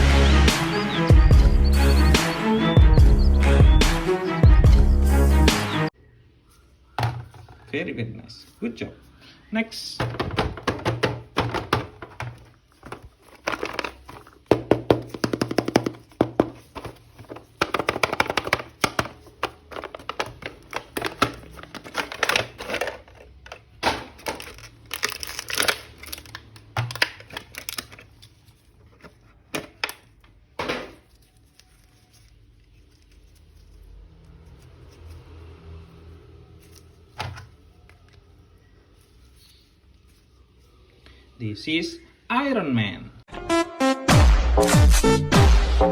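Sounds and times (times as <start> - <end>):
plastic packaging crinkling and tearing: 12.6 - 14.6, 16.6 - 29.4, 31.0 - 35.2
plastic toy clicks and knocks: 17.3 - 24.6.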